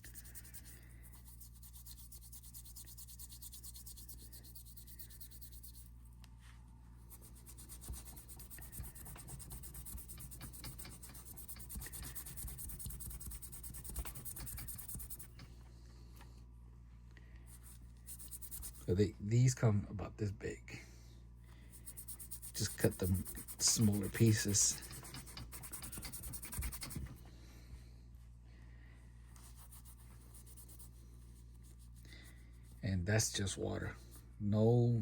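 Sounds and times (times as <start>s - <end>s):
sponge rubbing a strap: 0.0s - 6.0s, 7.1s - 15.4s, 17.6s - 18.9s, 21.7s - 27.1s, 29.4s - 32.8s.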